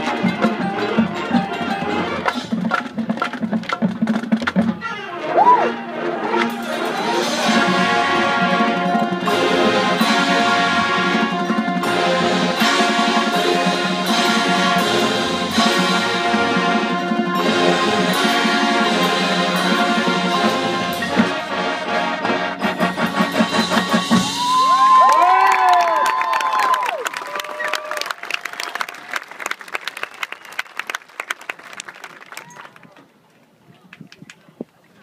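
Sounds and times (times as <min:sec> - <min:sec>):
marching band playing: 0:00.0 - 0:25.9.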